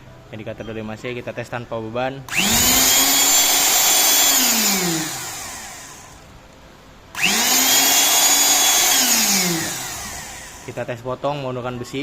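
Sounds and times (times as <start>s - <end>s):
electric motor whining: 2.3s - 6.3s, 7.2s - 10.8s.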